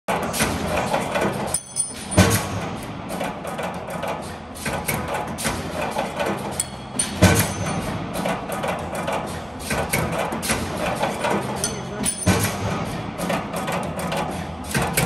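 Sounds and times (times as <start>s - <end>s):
mechanism clacks and knocks: 0.1s - 15.0s.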